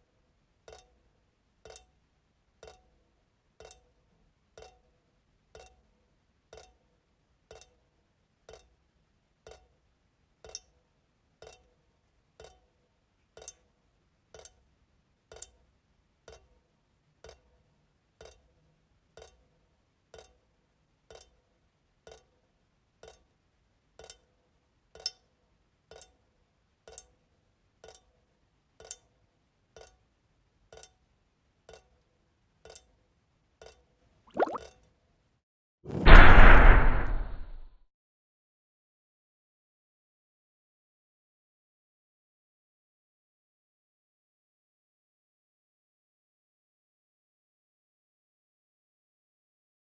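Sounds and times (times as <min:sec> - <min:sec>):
faucet dripping into sink: 0:10.4 - 0:10.7, 0:13.4 - 0:13.6, 0:23.0 - 0:23.2, 0:33.6 - 0:34.7.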